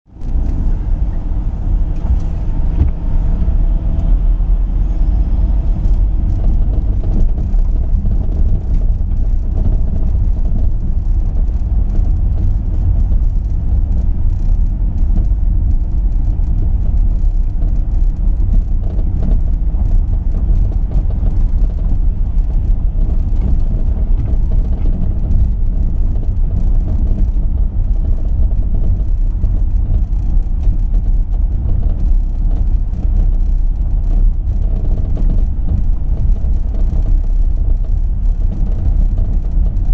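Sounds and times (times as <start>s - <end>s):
vehicle engine rumbling: 0.0s - 39.9s.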